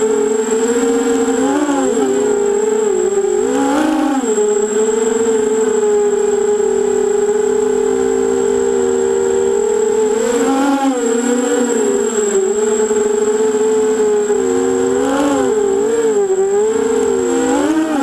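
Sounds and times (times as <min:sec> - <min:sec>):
drone motors whining: 0:00.0 - 0:18.0.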